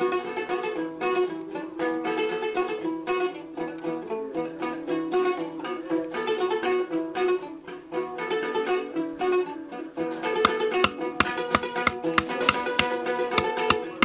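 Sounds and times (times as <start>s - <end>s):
plucked string instrument: 0.0s - 14.0s
sharp clicking taps: 10.5s - 14.0s.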